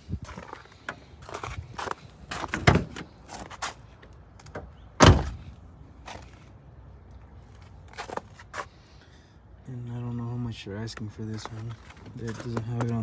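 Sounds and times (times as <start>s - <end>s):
handling noise: 0.3s - 3.8s
truck door slamming: 2.3s - 3.6s, 4.4s - 5.6s.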